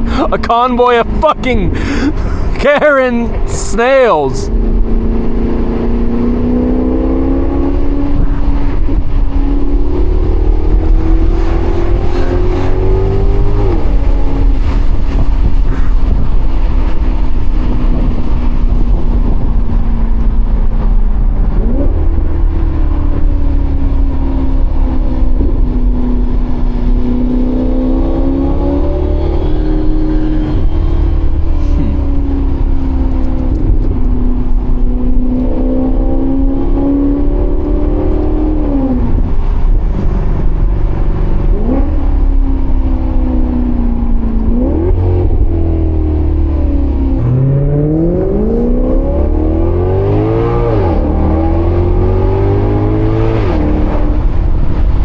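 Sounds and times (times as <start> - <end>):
car engine running: 0.0 - 27.2, 29.4 - 36.2, 37.5 - 55.0.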